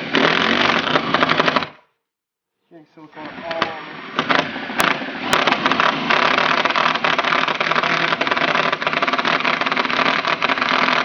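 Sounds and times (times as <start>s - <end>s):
power drill driving screw into metal: 0.0s - 1.8s, 3.3s - 8.9s.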